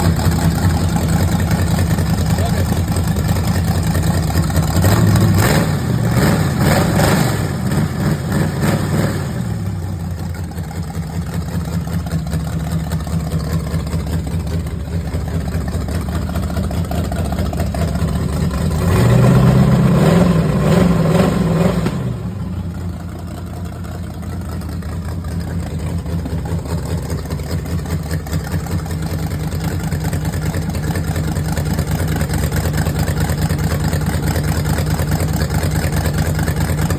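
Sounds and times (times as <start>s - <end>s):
engine idling and revving: 0.0s - 36.9s.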